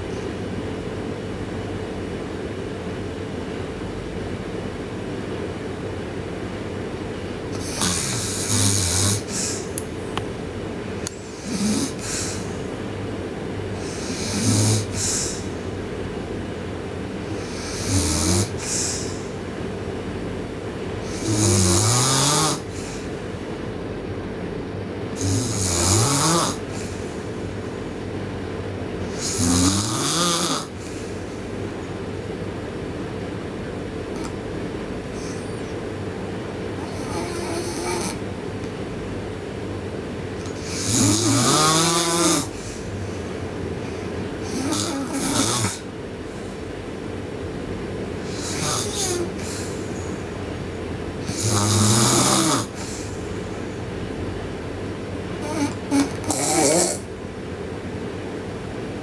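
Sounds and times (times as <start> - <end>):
steady low hum: 0.0 - 59.0
girl snoring loudly: 7.5 - 9.8, 11.2 - 12.7, 13.8 - 15.6, 17.2 - 19.3, 21.0 - 23.1, 25.2 - 27.3, 29.0 - 31.5, 35.1 - 35.7, 36.8 - 38.2, 40.5 - 43.3, 44.4 - 45.9, 48.2 - 50.4, 51.2 - 53.8, 55.4 - 57.1.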